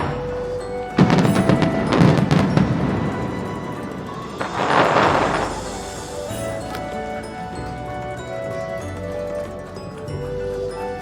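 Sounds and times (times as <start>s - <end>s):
held musical notes: 0.0s - 11.0s.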